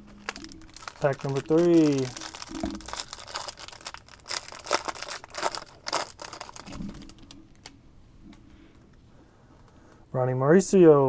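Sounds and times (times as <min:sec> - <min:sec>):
wrapper tearing and crinkling: 0:00.0 - 0:07.7.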